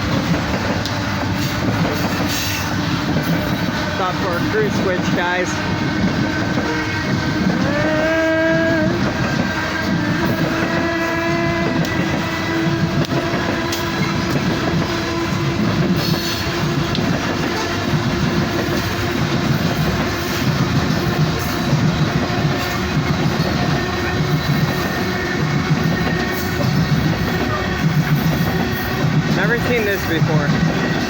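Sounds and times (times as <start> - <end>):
train wheels rumbling and clacking: 0.0 - 31.0
locomotive horn: 4.0 - 13.8.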